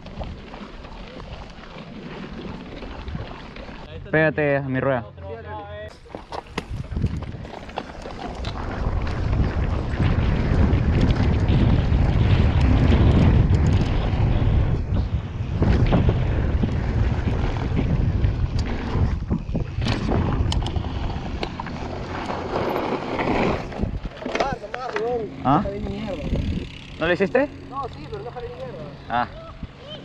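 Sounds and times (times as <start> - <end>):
bike tyre noise: 0.0 - 4.6, 5.9 - 30.0
bike rattles and knocks: 5.9 - 29.8
wind rushing over microphone: 5.9 - 30.0.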